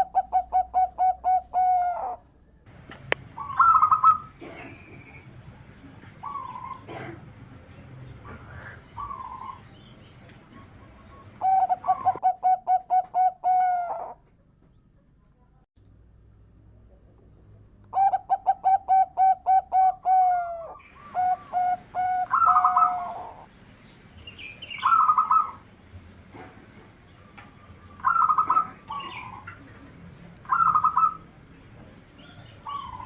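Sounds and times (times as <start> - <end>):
dove cooing: 0.0 - 2.2, 3.3 - 5.2, 5.9 - 7.4, 8.2 - 9.7, 10.4 - 14.2, 17.9 - 23.5, 24.8 - 25.6, 27.3 - 29.8, 30.4 - 31.4, 32.2 - 33.0.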